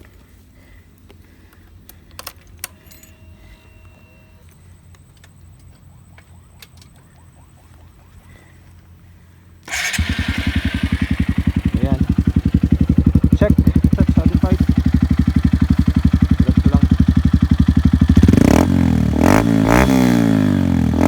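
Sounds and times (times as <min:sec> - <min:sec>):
keys jangling: 0:02.0 - 0:05.4
motorcycle engine firing up: 0:09.6 - 0:21.0.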